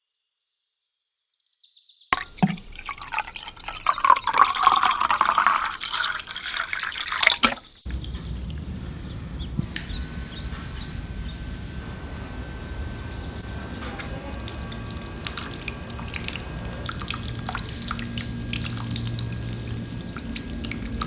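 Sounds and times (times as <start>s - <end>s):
fountain water splashing: 2.2s - 21.0s
low hum: 7.9s - 21.0s.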